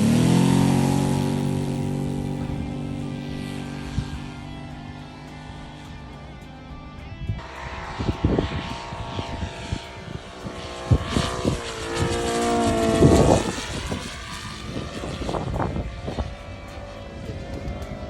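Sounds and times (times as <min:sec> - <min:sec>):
model airplane engine flying past: 0:00.0 - 0:18.0
wind thumps on microphone: 0:07.1 - 0:16.5.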